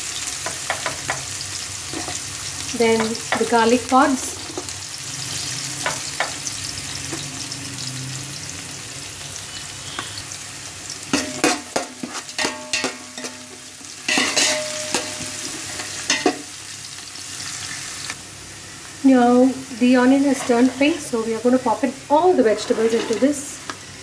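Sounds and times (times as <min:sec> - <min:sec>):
onion sizzling in hot oil: 0:00.0 - 0:24.0
metal spatula scraping pan: 0:11.1 - 0:16.4, 0:20.0 - 0:23.7.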